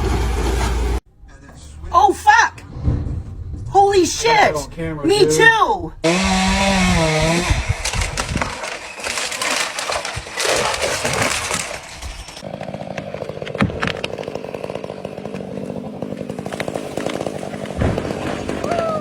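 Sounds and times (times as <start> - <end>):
chainsaw running: 6.0 - 18.6
crackling and snapping: 7.0 - 14.4, 16.4 - 19.0.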